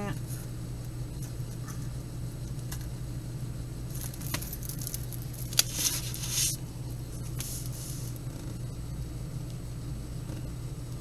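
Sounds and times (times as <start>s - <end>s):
steady low hum: 0.0s - 11.0s
packaging rustling: 3.9s - 6.6s.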